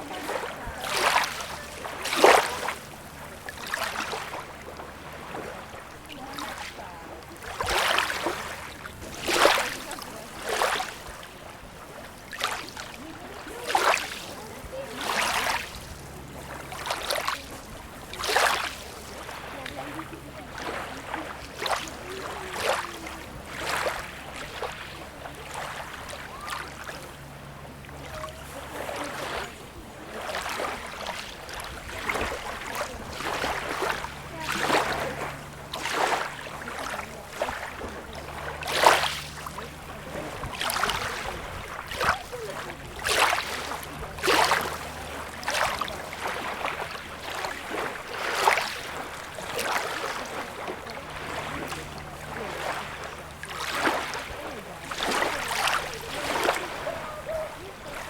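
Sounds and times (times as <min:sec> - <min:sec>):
low steady hum: 0:00.0 - 0:58.0
small waves splashing: 0:00.0 - 0:58.0.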